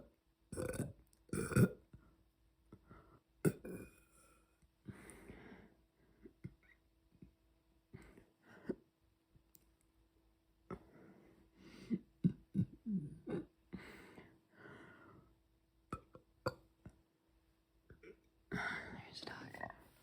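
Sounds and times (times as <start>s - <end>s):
woman burping: 0.6s - 1.9s, 3.4s - 4.0s.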